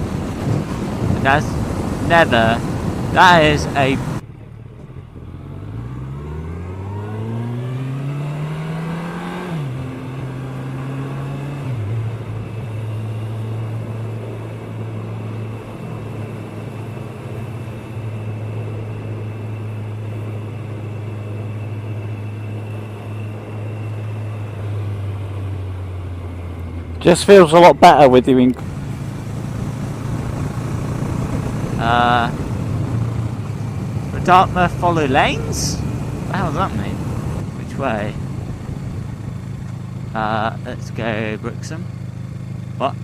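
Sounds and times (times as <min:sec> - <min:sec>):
wind rush: 0:00.0 - 0:04.2, 0:28.6 - 0:39.7
motorcycle engine accelerating: 0:00.0 - 0:43.0.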